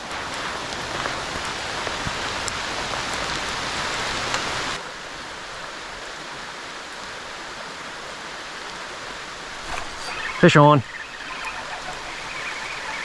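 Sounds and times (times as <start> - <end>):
heavy rain falling: 0.0 - 4.8
creek water flowing: 0.1 - 13.0.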